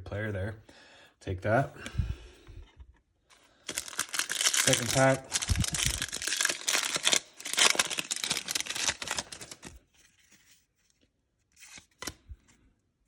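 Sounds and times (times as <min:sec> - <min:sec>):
wrapper tearing and crinkling: 0:03.7 - 0:09.8.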